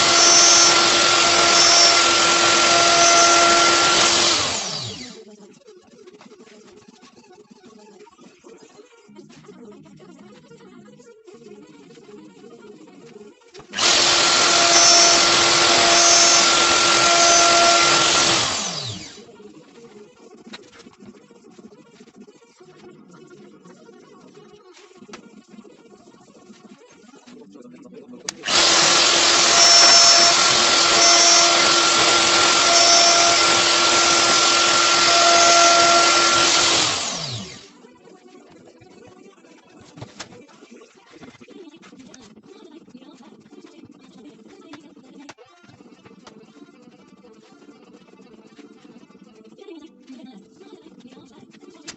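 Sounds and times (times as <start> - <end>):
power tool motor running: 0.0 - 5.2, 13.7 - 19.2, 28.4 - 37.7.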